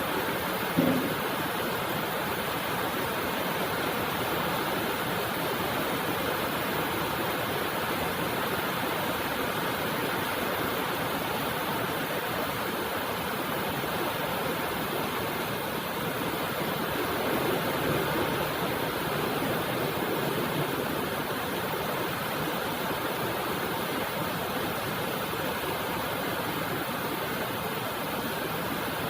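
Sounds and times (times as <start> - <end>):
heavy rain: 0.0 - 29.0
short low thump: 0.8 - 1.2.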